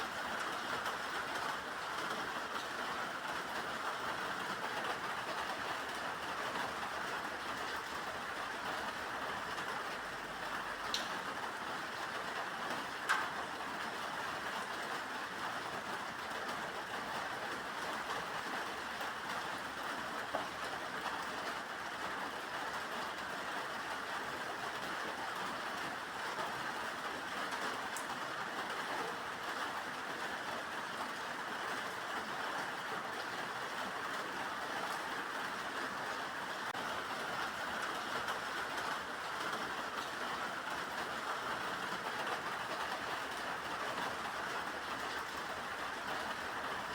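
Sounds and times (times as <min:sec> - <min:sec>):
steady rain hiss: 0:00.0 - 0:46.9
faint tick: 0:10.9 - 0:11.2.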